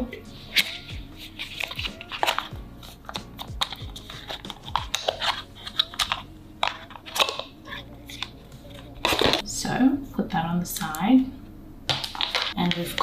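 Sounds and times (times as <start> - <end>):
hands handling cardboard packaging: 0.5 - 9.4.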